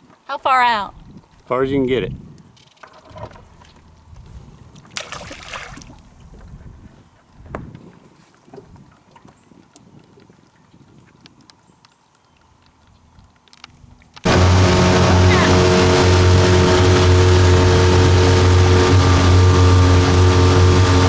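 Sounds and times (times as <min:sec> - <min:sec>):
water and boat noise: 0:00.0 - 0:21.0
wind buffeting microphone: 0:00.9 - 0:02.5, 0:06.0 - 0:08.9
water splash: 0:05.0 - 0:06.0.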